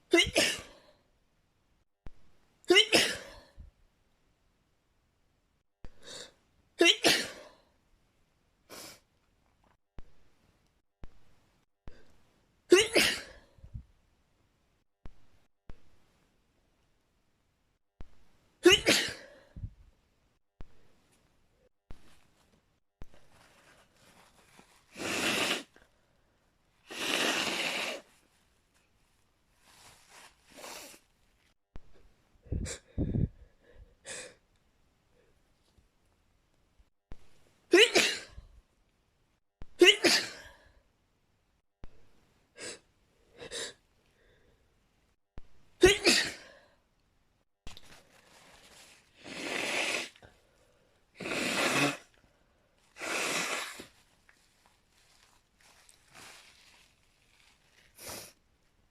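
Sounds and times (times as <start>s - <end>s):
person sneezing: 0.0s - 0.8s, 2.7s - 3.6s, 6.8s - 7.5s, 12.7s - 13.5s, 18.6s - 19.4s, 24.9s - 25.7s, 26.9s - 28.1s, 37.7s - 38.4s, 39.8s - 40.6s, 45.8s - 46.6s, 51.2s - 52.1s, 53.0s - 53.9s
person blowing nose: 24.7s - 25.8s, 26.8s - 28.2s, 30.5s - 31.0s, 49.1s - 50.3s, 51.2s - 52.2s, 52.9s - 54.0s, 58.0s - 58.4s.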